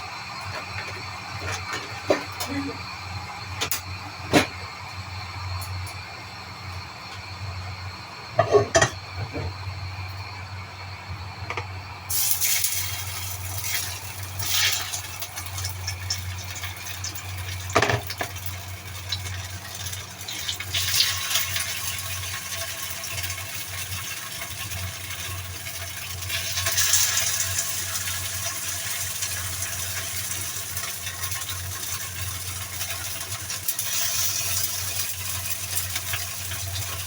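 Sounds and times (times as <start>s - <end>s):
water running from a tap: 12.1s - 37.0s.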